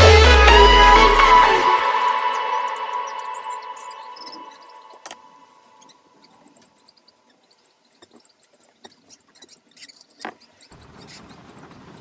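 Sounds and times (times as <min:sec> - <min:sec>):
music track: 0:00.0 - 0:05.4
lovebirds peeping and squeaking: 0:00.7 - 0:12.0.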